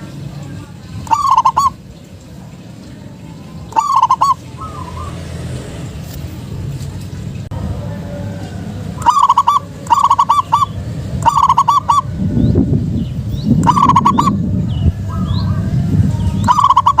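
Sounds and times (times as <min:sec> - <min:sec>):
dove cooing: 0:01.0 - 0:01.8, 0:03.7 - 0:05.4, 0:09.0 - 0:12.2, 0:13.6 - 0:14.4, 0:16.4 - 0:17.0
low rumble: 0:12.0 - 0:16.6.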